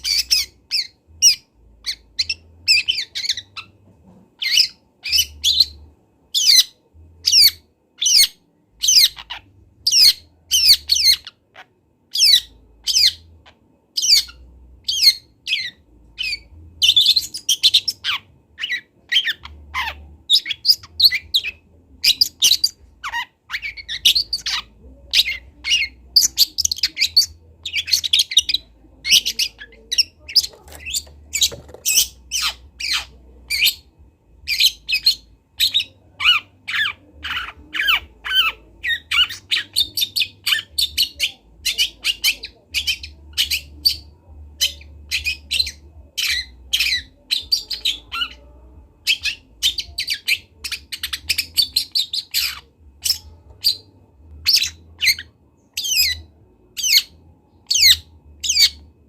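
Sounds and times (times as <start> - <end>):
bird song of sharp high notes: 0.0 - 3.8.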